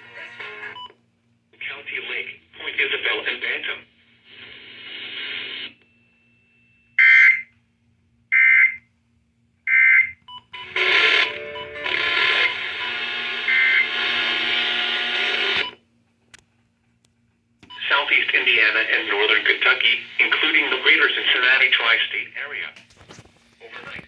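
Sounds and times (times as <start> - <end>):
harsh alarm tone: 10.6 - 15.8.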